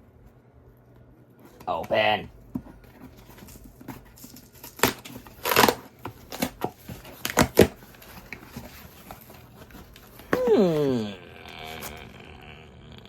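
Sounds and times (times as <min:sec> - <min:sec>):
packaging being torn open: 0:04.2 - 0:08.1.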